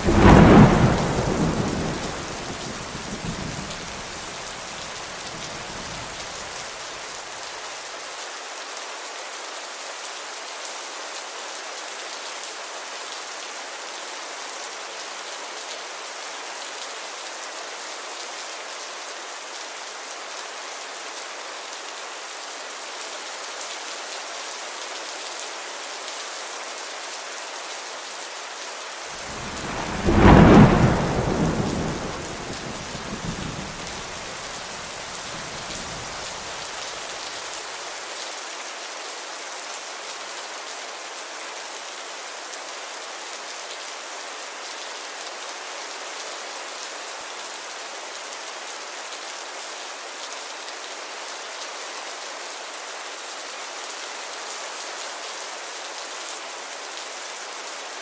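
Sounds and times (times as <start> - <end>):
thunder rumbling: 0.0 - 4.7, 5.3 - 6.2, 29.2 - 36.6
steady rainfall: 0.0 - 58.0.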